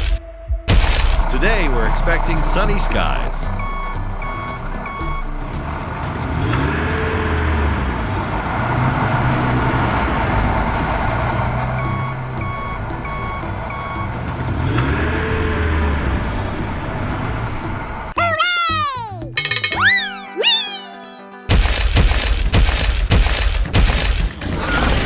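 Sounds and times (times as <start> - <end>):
heavy truck engine rumbling: 1.2 - 18.2
reversing alarm beeping: 3.2 - 5.3, 11.8 - 14.7.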